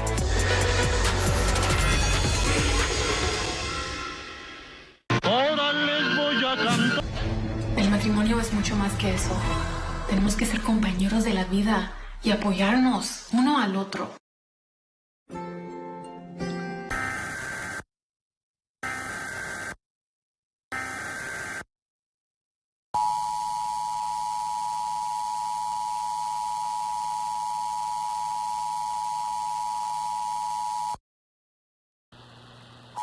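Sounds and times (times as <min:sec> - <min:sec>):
digital warble data bursts: 0:16.9 - 0:17.8.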